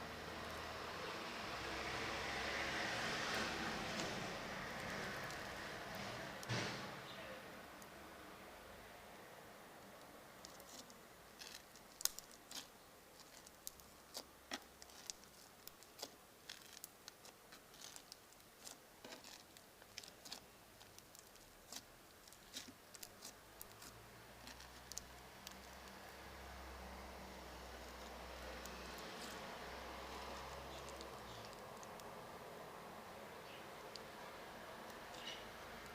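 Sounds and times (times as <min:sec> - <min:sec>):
road traffic rumble: 0:00.0 - 0:35.9
slime popping and crackling: 0:10.4 - 0:26.1.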